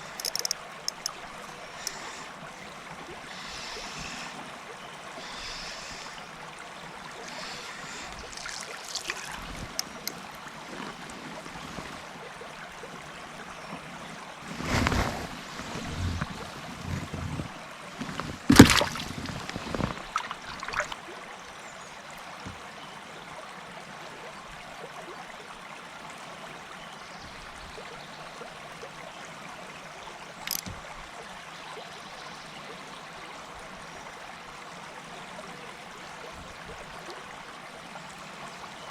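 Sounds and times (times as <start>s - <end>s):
river water rushing: 0.0s - 21.2s
knocks and handling noises: 14.5s - 21.0s.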